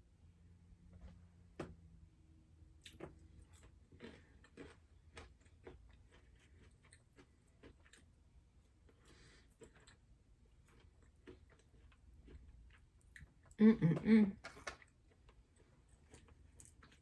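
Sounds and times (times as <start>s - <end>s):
chewing and mouth sounds: 2.8s - 8.1s, 8.7s - 13.6s, 14.4s - 17.0s.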